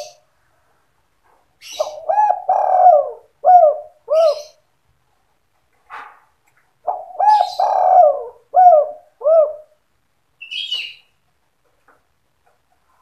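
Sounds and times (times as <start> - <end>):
dove cooing: 0.0 - 0.2, 1.6 - 4.6, 6.8 - 9.8.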